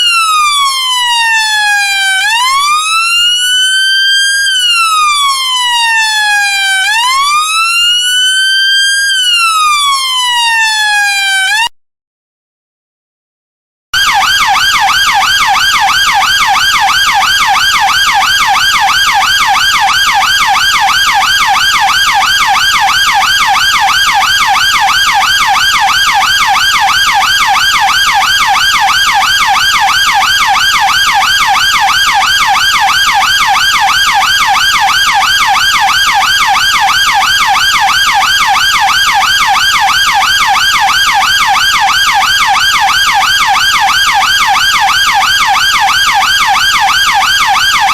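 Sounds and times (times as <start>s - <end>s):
police siren yelping: 0.0s - 11.7s, 14.0s - 47.9s.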